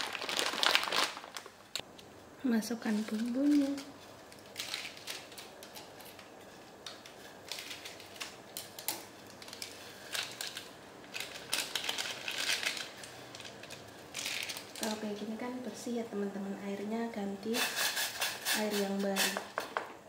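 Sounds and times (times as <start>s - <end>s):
plastic sachets crinkling: 0.0s - 1.8s, 2.8s - 15.0s.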